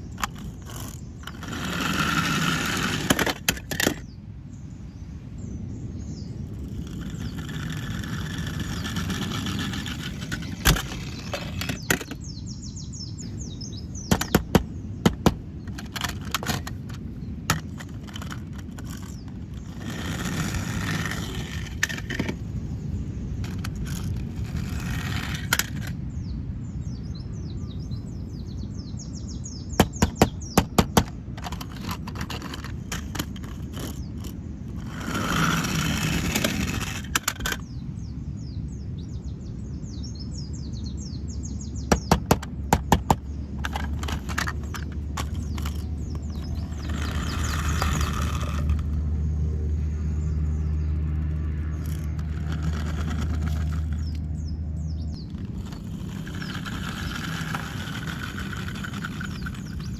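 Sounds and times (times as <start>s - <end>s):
sharp clicks and knocks: 14.0s - 22.4s, 29.8s - 37.6s, 41.9s - 49.1s.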